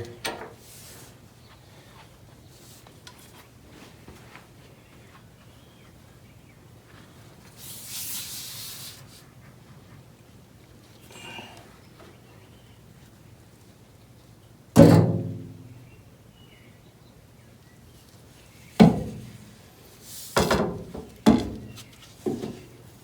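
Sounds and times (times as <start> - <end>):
sharp metal knocks: 14.8 - 15.7.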